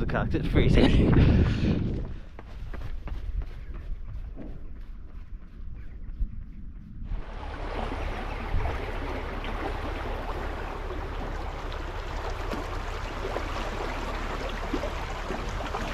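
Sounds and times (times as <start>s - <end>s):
rushing water: 7.1s - 15.9s.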